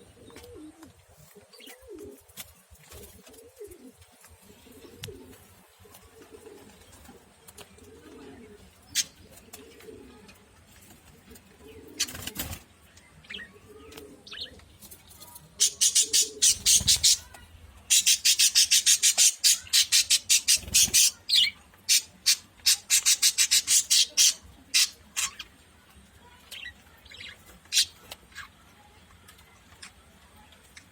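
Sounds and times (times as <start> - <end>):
budgerigars chirping: 15.6 - 17.2, 17.9 - 25.4.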